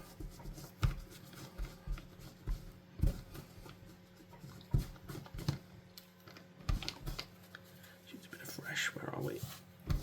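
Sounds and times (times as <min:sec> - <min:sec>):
plastic parts tapping and knocking: 0:04.5 - 0:07.4.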